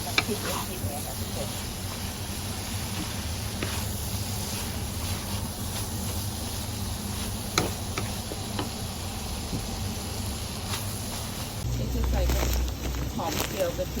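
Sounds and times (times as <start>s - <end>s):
metal spatula scraping wok: 0.0s - 8.7s
steady low hum: 0.0s - 14.0s.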